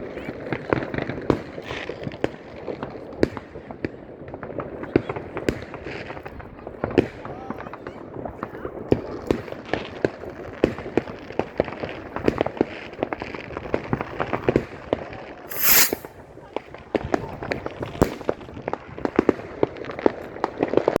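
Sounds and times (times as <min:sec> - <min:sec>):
loud firework hiss: 0:15.5 - 0:16.1.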